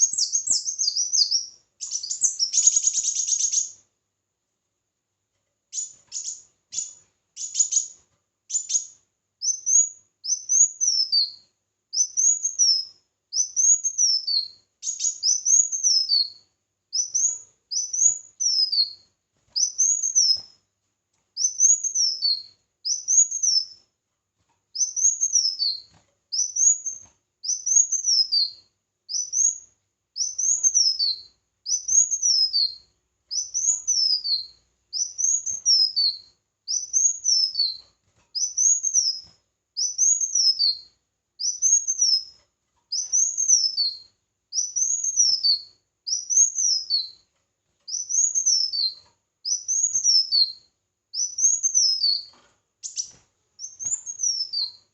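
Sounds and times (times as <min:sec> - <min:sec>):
songbird singing: 0:00.0 - 0:03.8, 0:05.7 - 0:20.6, 0:21.4 - 0:23.8, 0:24.7 - 0:47.3, 0:47.9 - 0:54.9.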